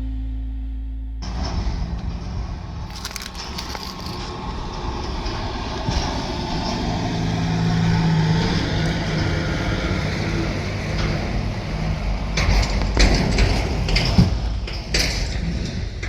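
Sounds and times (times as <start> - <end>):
vehicle engine humming: 0.0 - 16.0
sharp knocks and clatters: 8.6 - 16.0.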